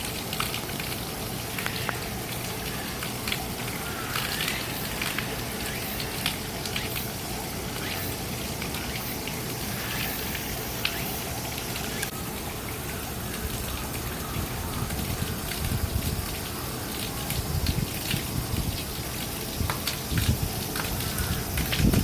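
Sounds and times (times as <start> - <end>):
falling water hissing: 0.0 - 22.0
faint ticks: 10.8 - 11.0.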